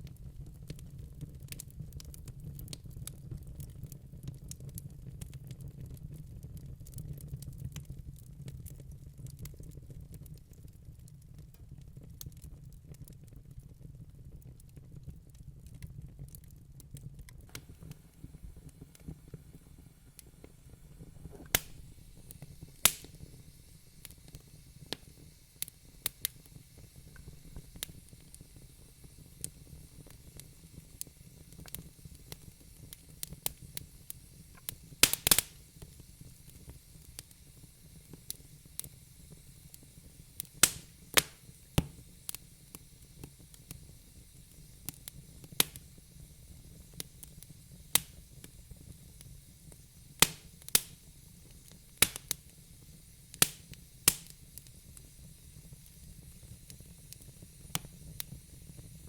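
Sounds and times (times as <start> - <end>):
fire hissing: 0.0 - 59.0
logs crackling and popping: 0.0 - 59.0.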